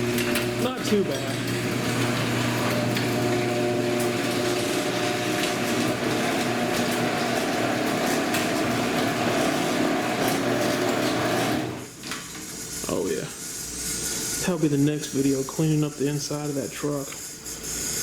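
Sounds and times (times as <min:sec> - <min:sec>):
small motor humming and hissing: 0:11.6 - 0:18.0.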